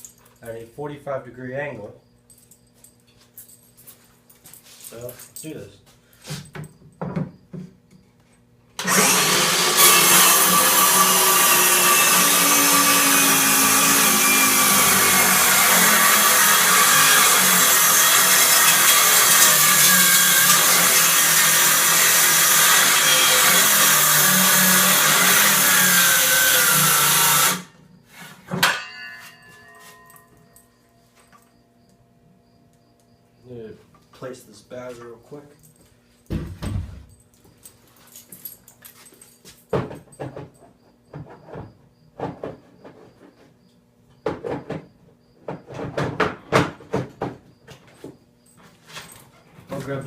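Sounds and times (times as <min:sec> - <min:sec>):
objects knocking and rattling: 0:06.3 - 0:07.8, 0:28.4 - 0:30.6, 0:36.2 - 0:43.4, 0:44.2 - 0:49.2
circular saw cutting wood: 0:08.8 - 0:28.3.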